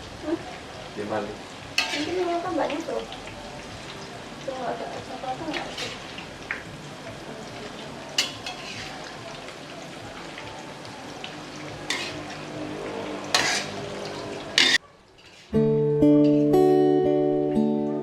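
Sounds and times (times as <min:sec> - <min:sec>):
tofu sizzling in hot oil: 0:00.0 - 0:15.6
utensil scraping a pan: 0:01.8 - 0:02.4, 0:05.4 - 0:06.6, 0:08.2 - 0:09.4, 0:11.8 - 0:15.6.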